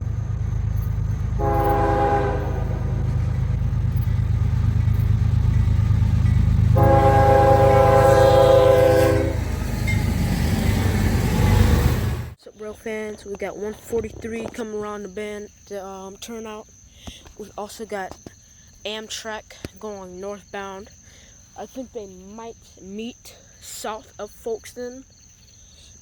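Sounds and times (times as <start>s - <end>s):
train low rumble: 0.0s - 15.3s
locomotive air horn blasts: 1.4s - 3.6s, 6.7s - 9.6s.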